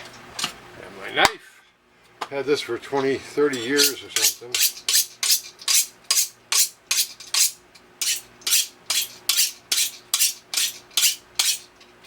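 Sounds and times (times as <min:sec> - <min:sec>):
knife rasping on sharpener: 0:03.7 - 0:11.7.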